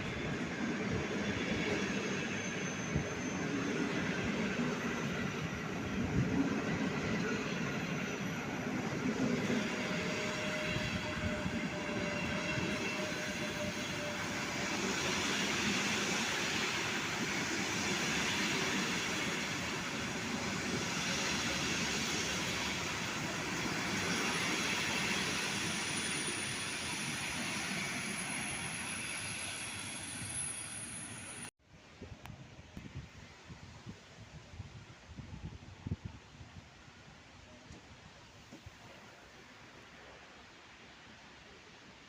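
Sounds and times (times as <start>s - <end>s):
train wheels rumbling on rail: 0.0s - 31.5s.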